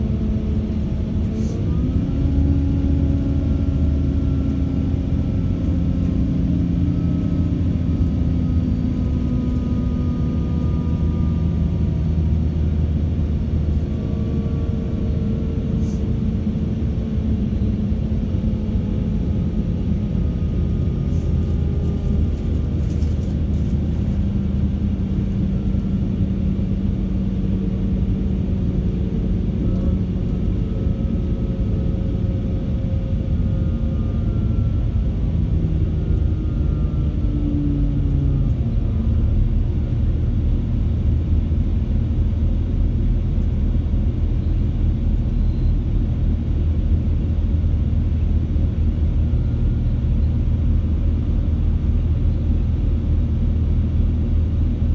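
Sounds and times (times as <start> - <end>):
diesel engine low rumble: 0.0 - 54.9
faint whistle-like tone: 45.3 - 45.8.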